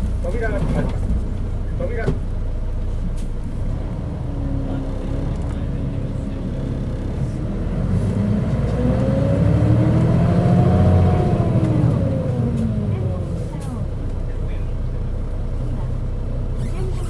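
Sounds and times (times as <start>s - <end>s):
bus engine pulling away: 0.0s - 17.0s.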